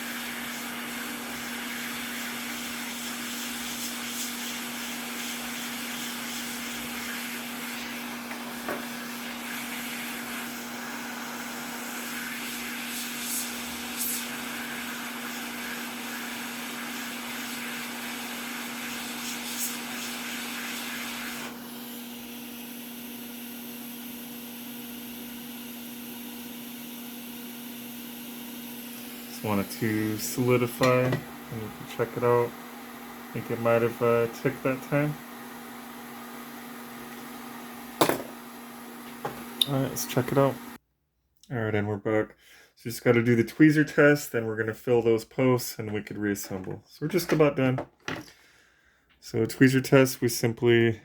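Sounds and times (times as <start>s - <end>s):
hot-air station hissing: 0.0s - 40.8s.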